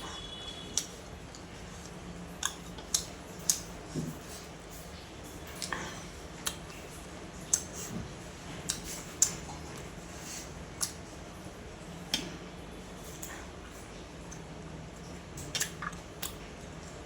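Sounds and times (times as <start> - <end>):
eating clicks and smacks: 0.7 - 10.0, 10.7 - 11.2, 12.0 - 12.4, 13.0 - 14.5, 15.4 - 17.0.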